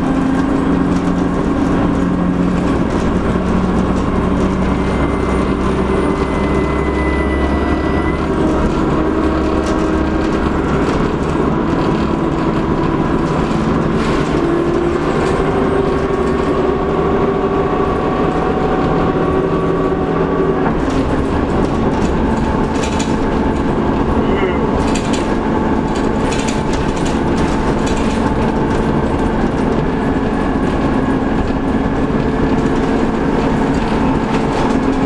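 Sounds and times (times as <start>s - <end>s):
bus diesel engine running: 0.0s - 35.0s
turbocharger whistle: 4.7s - 8.4s.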